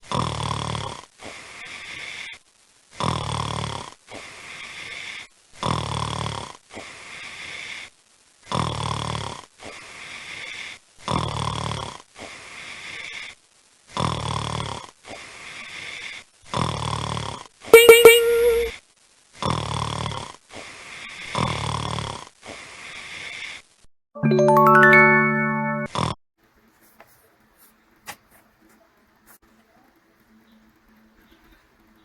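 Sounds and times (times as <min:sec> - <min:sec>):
loud buzzing snore: 0:00.0 - 0:01.1, 0:03.0 - 0:07.7, 0:08.5 - 0:13.0, 0:14.0 - 0:14.9, 0:15.6 - 0:17.5, 0:19.4 - 0:20.4, 0:21.0 - 0:23.4.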